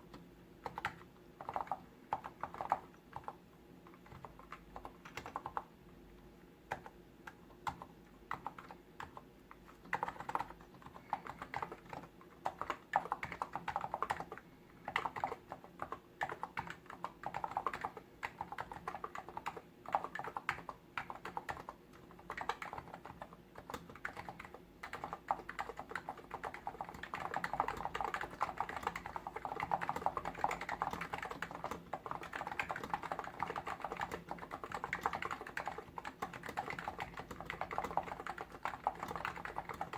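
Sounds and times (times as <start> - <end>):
keyboard typing: 0.0 - 5.7, 6.6 - 39.9.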